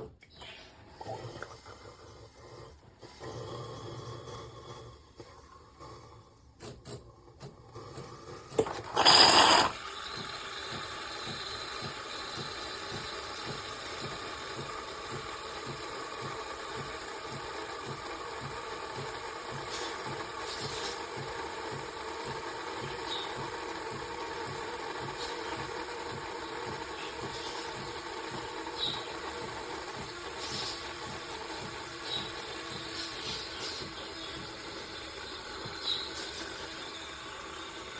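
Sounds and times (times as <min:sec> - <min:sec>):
espresso machine mechanical drone: 0:07.6 - 0:37.9.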